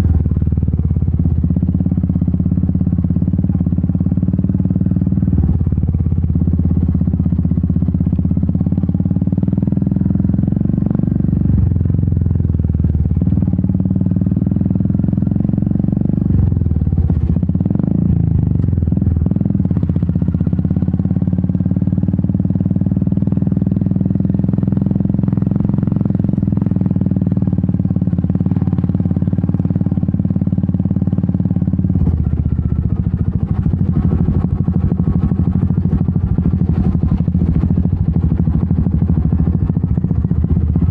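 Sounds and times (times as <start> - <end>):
motorcycle engine and exhaust running: 0.0 - 40.9.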